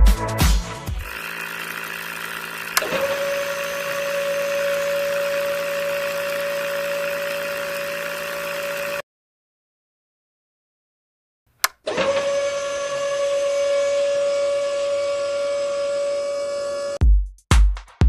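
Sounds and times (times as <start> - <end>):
small electric motor humming: 0.9 - 9.0, 11.9 - 17.0
steady motor whine: 0.9 - 9.0, 11.9 - 17.0
click: 2.7 - 3.0, 11.6 - 11.9.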